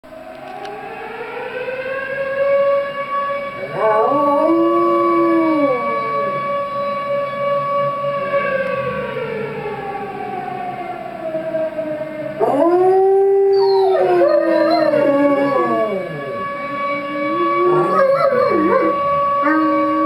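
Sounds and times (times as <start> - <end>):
tornado siren through speaker: 0.0 - 20.0
dogs howling: 3.7 - 6.4, 12.4 - 20.0.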